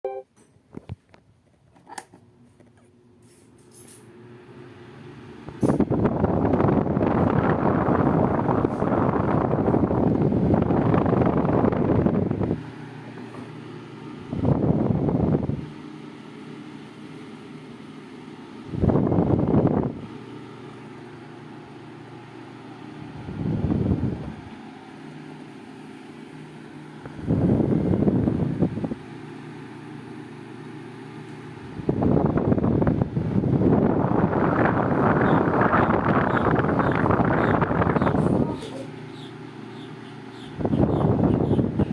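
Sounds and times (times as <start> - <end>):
fan humming: 0.8 - 41.9
fan airflow wind rumble on microphone: 4.7 - 41.9.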